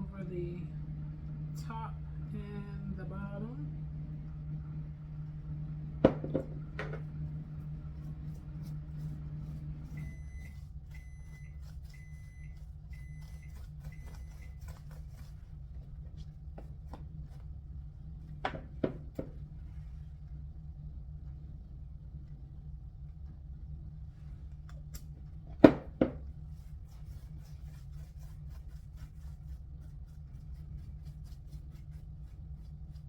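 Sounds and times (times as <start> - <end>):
microwave humming: 0.0 - 26.9
microwave beeps: 9.5 - 14.6.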